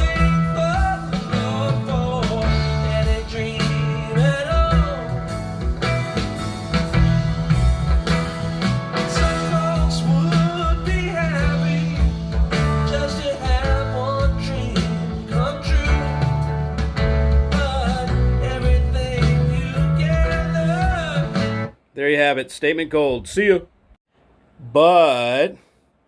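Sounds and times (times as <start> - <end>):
song over loudspeakers: 0.0 - 6.0, 8.2 - 21.7.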